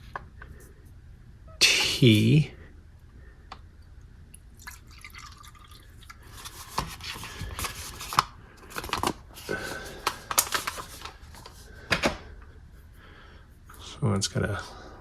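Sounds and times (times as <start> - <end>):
liquid dripping and splashing: 4.6 - 6.2
plastic pouch clicks and rustles: 6.4 - 12.2.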